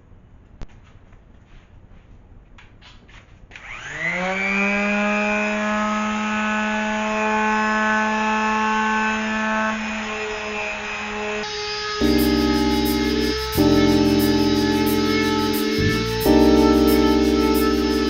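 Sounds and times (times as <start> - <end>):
power sander motor whine: 3.6 - 13.7.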